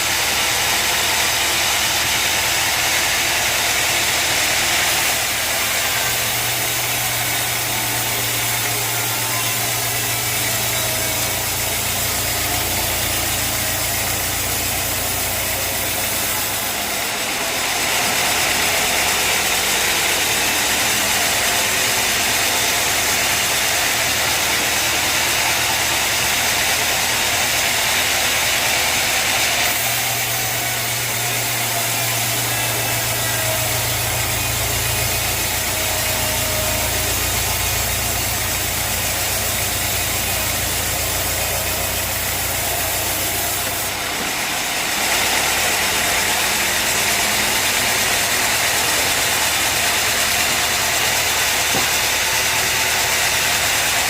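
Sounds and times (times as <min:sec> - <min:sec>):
sawmill machinery running: 0:00.0 - 0:54.0
deep engine hum: 0:29.8 - 0:44.6.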